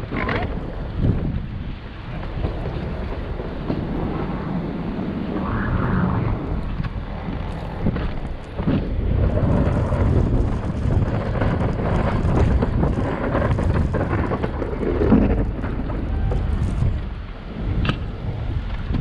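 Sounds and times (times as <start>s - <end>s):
wind buffeting microphone: 0.0s - 19.0s
snow plow vehicle running: 6.6s - 19.0s.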